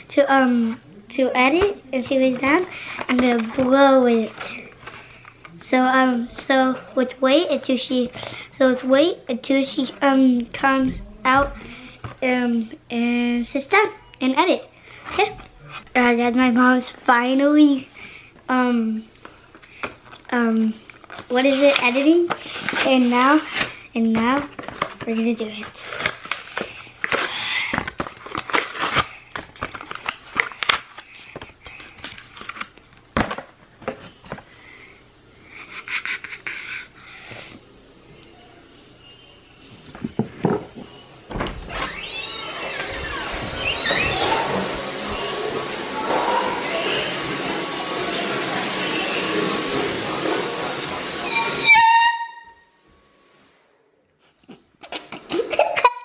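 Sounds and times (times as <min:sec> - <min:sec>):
air horn blast: 0:51.3 - 0:52.8.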